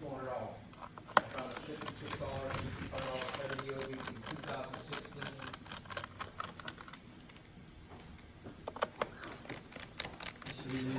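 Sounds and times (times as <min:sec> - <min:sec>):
laptop keyboard typing: 0:01.1 - 0:07.5, 0:08.7 - 0:10.9.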